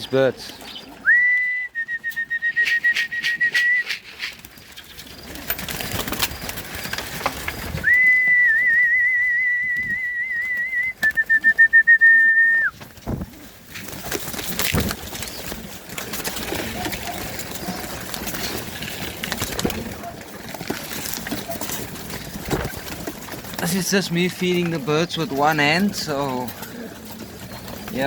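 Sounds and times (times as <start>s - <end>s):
pigeons cooing: 0.0s - 28.0s
high-pitched whistle: 1.1s - 4.0s, 7.8s - 12.8s.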